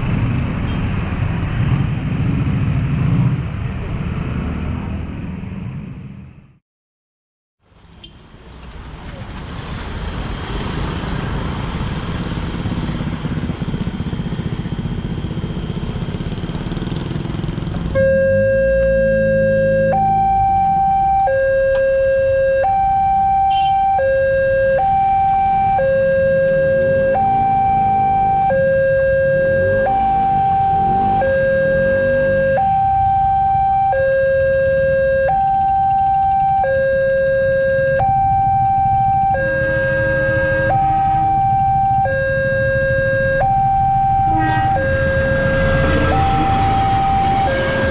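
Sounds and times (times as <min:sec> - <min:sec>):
road traffic noise: 0:00.0 - 0:06.6, 0:07.6 - 0:47.9
level crossing two-tone alarm: 0:18.0 - 0:47.9.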